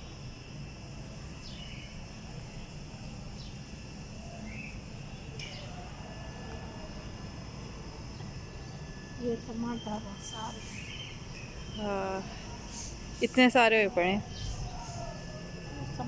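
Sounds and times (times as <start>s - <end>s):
insects chirring: 0.0s - 16.0s
bird chirps: 9.5s - 12.9s.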